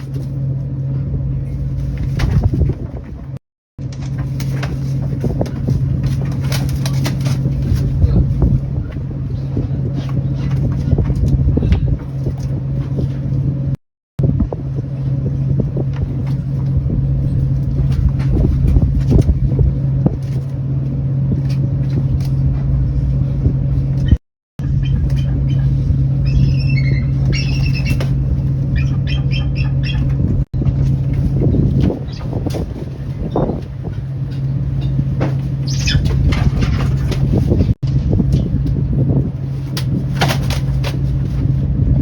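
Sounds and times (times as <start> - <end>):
low engine drone: 0.0 - 42.0
birds squawking: 24.1 - 30.4, 31.9 - 36.3.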